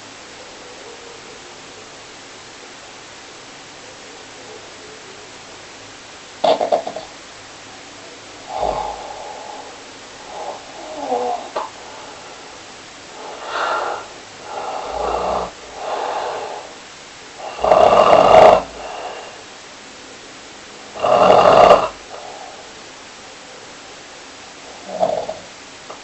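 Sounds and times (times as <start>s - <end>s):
person snoring: 8.5s - 12.5s, 13.1s - 16.8s, 17.4s - 19.5s, 21.0s - 22.8s, 24.7s - 25.5s.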